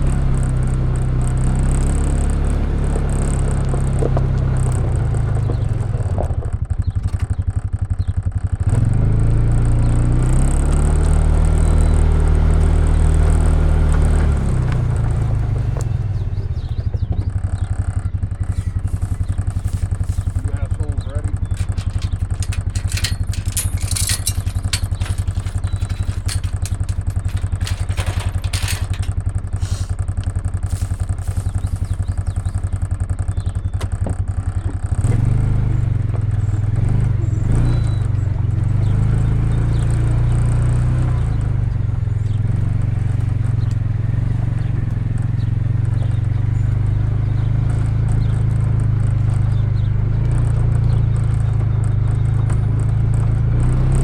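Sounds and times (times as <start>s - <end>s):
farm vehicle engine running: 0.0s - 54.0s
clattering: 18.8s - 29.6s.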